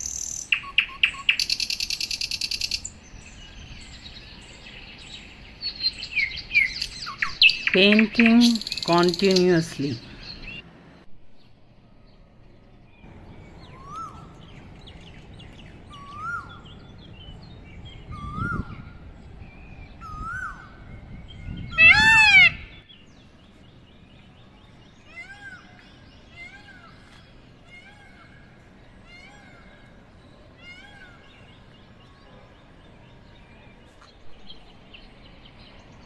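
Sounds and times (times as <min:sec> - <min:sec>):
birds calling: 0:00.0 - 0:10.7, 0:12.9 - 0:32.1
loud arching bird call: 0:04.2 - 0:10.6, 0:13.1 - 0:17.2, 0:21.6 - 0:22.9.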